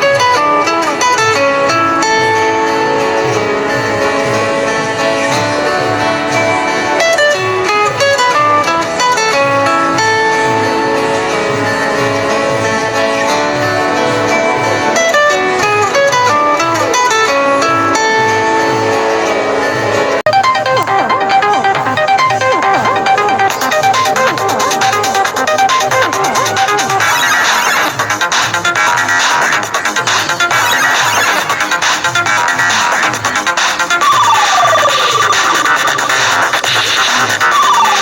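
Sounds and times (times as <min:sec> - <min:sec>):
ringtone plucked melody: 0:00.0 - 0:38.0.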